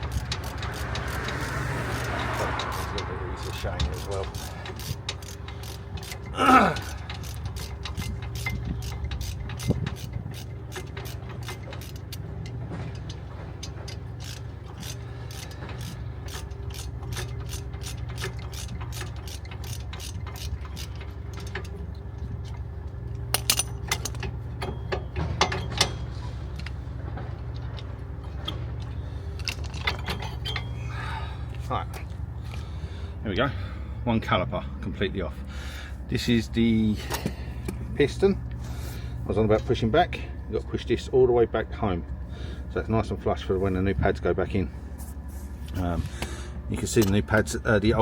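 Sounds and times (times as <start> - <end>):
hand ratchet clicking: 0.0 - 22.6, 23.3 - 26.0.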